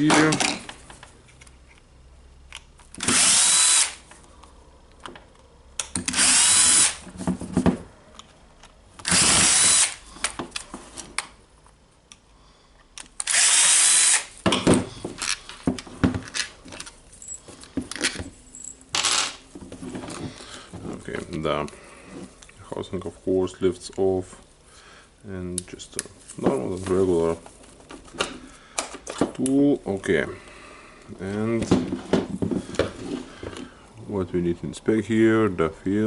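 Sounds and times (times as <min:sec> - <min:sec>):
electric screwdriver whirring: 0:03.0 - 0:04.0, 0:06.0 - 0:07.0, 0:09.0 - 0:10.0, 0:13.2 - 0:14.3, 0:19.0 - 0:19.4
clatter of screws and parts: 0:14.5 - 0:20.5.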